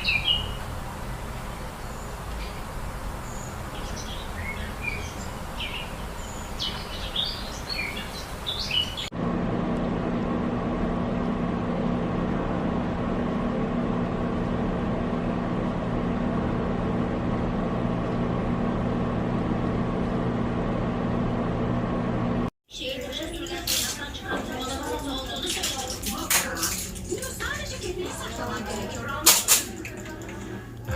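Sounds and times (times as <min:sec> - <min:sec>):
small birds chirping: 0:00.0 - 0:09.1
steady mechanical hum: 0:00.0 - 0:30.9.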